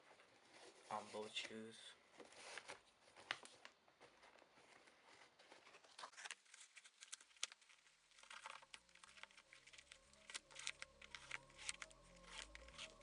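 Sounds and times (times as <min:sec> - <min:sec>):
shoelaces clicking and rustling: 0:02.6 - 0:13.0
quiet background music: 0:08.9 - 0:13.0.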